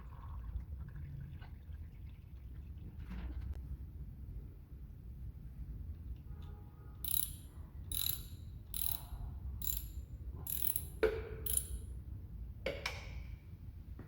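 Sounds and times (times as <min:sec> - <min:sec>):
ratchet wrench clicking: 0:07.0 - 0:11.9.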